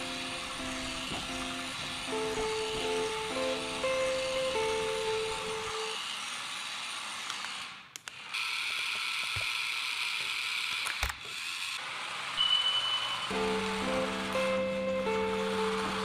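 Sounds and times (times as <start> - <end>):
toy car motor whirring: 0.0 - 12.5.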